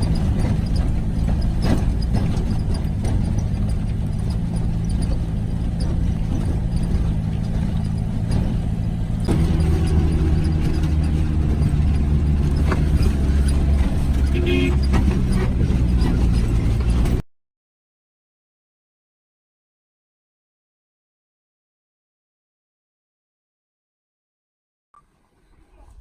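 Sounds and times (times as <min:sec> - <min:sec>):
road noise: 0:00.0 - 0:17.2
vehicle engine running: 0:00.0 - 0:17.2.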